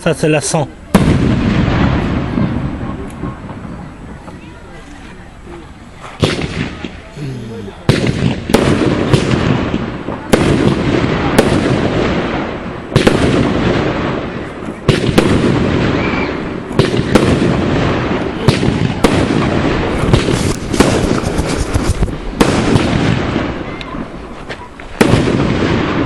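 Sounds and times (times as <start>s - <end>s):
crackling firework rumble: 0.0s - 26.0s
firework shells bursting: 7.8s - 26.0s.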